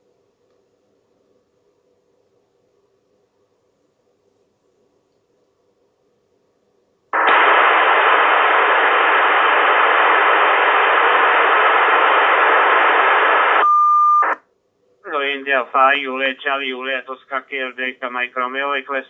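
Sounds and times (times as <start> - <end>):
radio static hiss: 7.2 - 13.6, 15.0 - 19.0.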